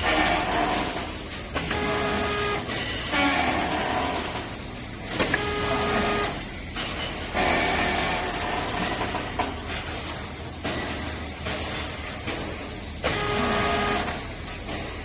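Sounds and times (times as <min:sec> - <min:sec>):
machinery whine: 0:00.0 - 0:09.2.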